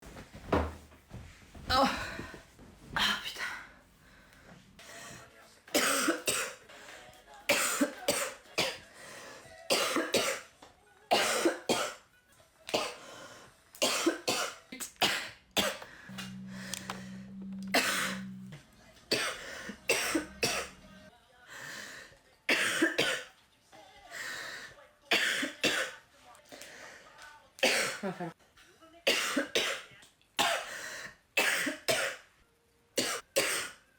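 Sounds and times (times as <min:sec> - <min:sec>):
young woman coughing: 0:05.7 - 0:06.6, 0:07.5 - 0:08.8, 0:09.7 - 0:10.5, 0:11.1 - 0:12.1, 0:12.7 - 0:13.0, 0:13.8 - 0:17.0, 0:17.7 - 0:18.4, 0:19.1 - 0:20.9, 0:22.5 - 0:23.3, 0:25.1 - 0:26.0, 0:27.6 - 0:28.4, 0:29.1 - 0:30.8, 0:31.4 - 0:32.3, 0:33.0 - 0:33.8.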